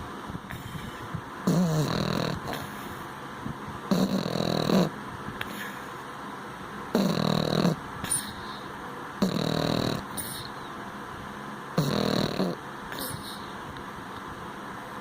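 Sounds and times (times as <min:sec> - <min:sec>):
dog snoring: 0:00.5 - 0:03.0, 0:03.9 - 0:05.7, 0:06.9 - 0:10.6, 0:11.7 - 0:13.5.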